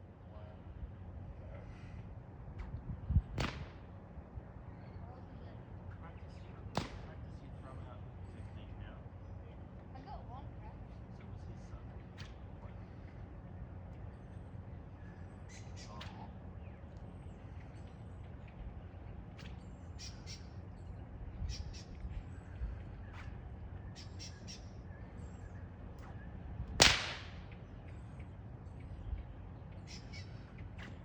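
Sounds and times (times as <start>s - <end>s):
loud whip crack: 3.4s - 3.8s, 6.8s - 7.1s, 26.8s - 27.4s.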